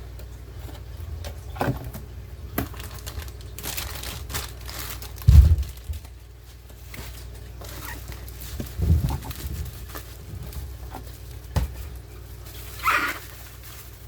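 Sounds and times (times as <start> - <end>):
cardboard box crinkling and rustling: 2.6 - 6.2, 6.8 - 14.0.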